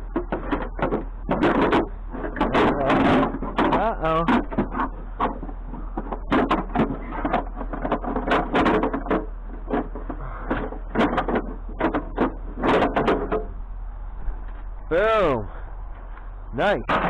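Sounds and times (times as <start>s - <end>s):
scrap knocking and clattering: 0.0s - 13.6s
steady low hum: 0.0s - 17.0s.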